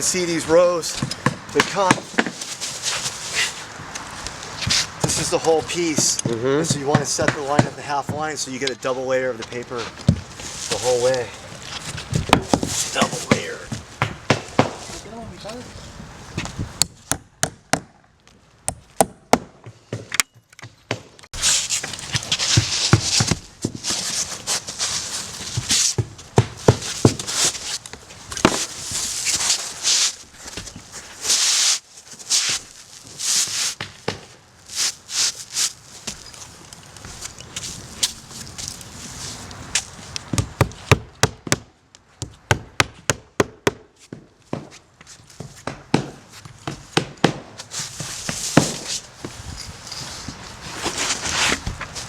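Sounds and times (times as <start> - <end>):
hiss and rustle: 1.6 - 6.8, 9.5 - 13.7, 21.4 - 40.9, 47.6 - 52.0.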